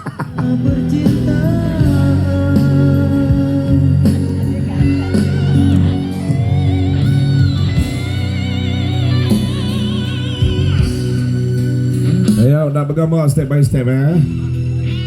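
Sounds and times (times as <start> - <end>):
electric guitar with vibrato: 0.0 - 15.0
rock band music: 0.0 - 15.0.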